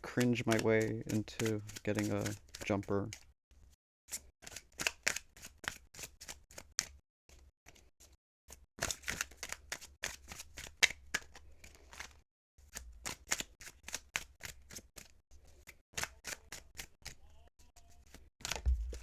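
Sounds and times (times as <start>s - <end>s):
cards being shuffled: 0.1s - 3.2s, 4.5s - 6.9s, 8.8s - 12.1s, 12.7s - 19.0s.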